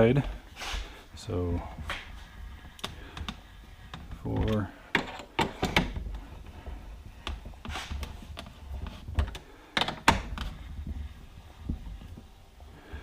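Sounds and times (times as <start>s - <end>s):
spring compressor clicks and knocks: 2.8s - 6.1s.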